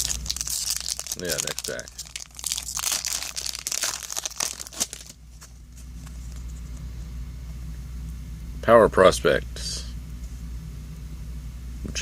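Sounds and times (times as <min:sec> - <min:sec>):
wrapper tearing and crinkling: 0:00.0 - 0:05.8
low steady hum: 0:00.0 - 0:12.0.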